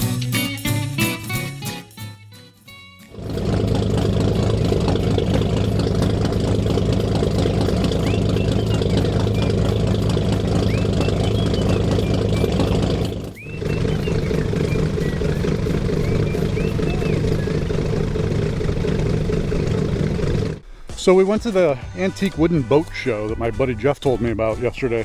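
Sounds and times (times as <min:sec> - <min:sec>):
engine idling: 0:03.0 - 0:20.9.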